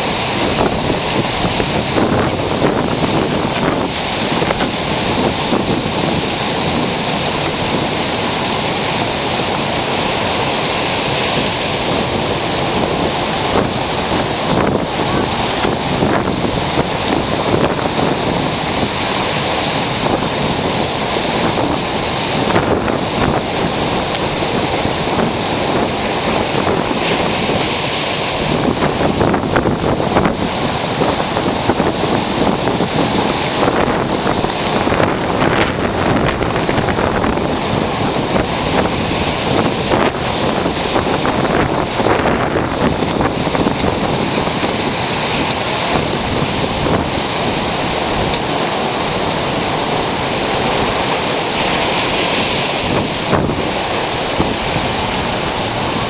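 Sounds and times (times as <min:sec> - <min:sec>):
ocean surf breaking: 0:00.0 - 0:56.0.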